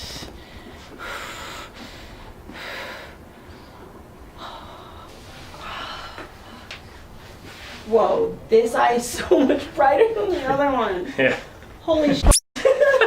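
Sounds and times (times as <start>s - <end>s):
person breathing deeply: 0.0s - 3.8s, 4.4s - 7.9s.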